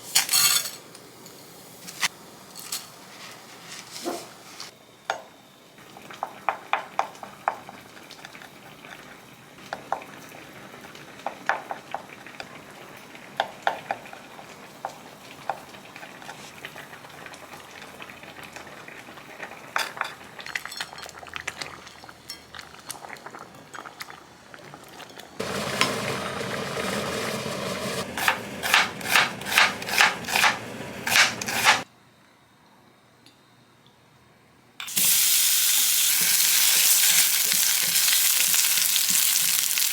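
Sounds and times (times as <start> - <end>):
utensils clinking on dishes: 0.0 - 3.0, 28.2 - 31.8.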